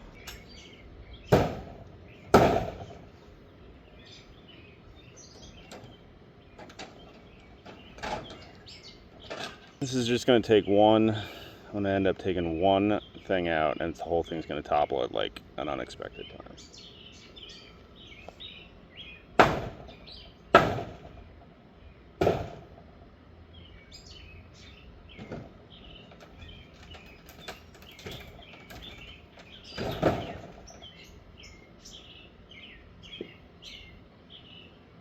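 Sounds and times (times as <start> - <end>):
birds chirping: 0.0 - 35.0
heavy blows striking wood: 1.3 - 3.0, 19.4 - 21.2, 22.2 - 22.8, 29.7 - 30.6.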